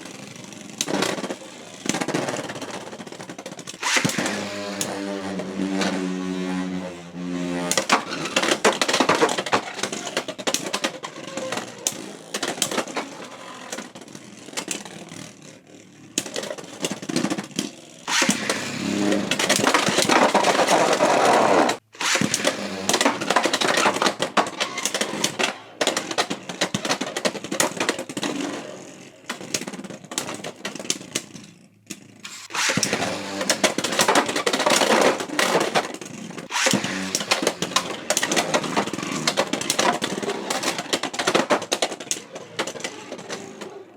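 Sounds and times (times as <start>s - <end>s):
spinning tops clashing and grinding: 32.3s - 43.9s.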